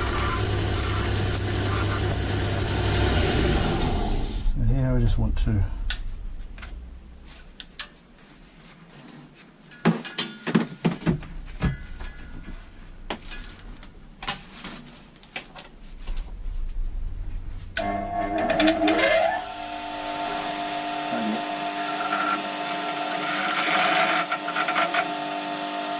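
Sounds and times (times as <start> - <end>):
power tool motor whine: 0.0 - 4.4, 17.8 - 25.9
tools clattering: 9.6 - 15.8.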